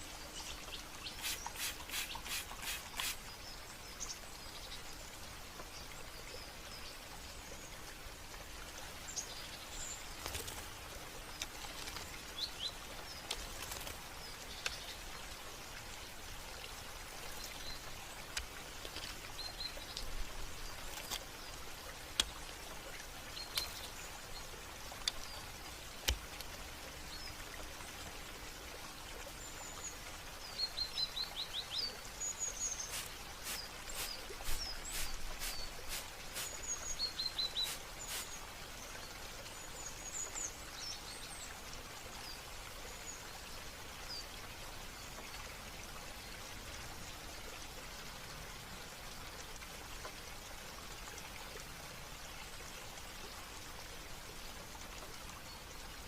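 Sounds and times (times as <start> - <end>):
hiss of running water: 0.0 - 4.2, 9.0 - 28.2, 29.4 - 38.8
small birds chirping: 0.0 - 4.9, 17.2 - 27.4, 29.3 - 38.9
sharp drip-like clicks: 11.3 - 12.0, 18.2 - 20.2, 22.1 - 22.8, 23.4 - 24.0, 24.9 - 26.6.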